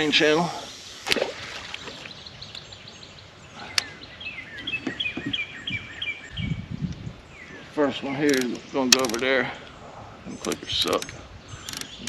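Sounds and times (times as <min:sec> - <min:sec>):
songbird chirping: 0:00.0 - 0:12.0
sharp click: 0:08.2 - 0:09.2, 0:10.4 - 0:12.0.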